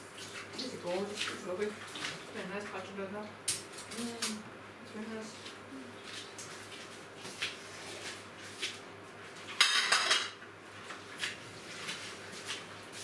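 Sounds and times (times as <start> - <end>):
dishes and cutlery clinking: 9.6 - 10.4.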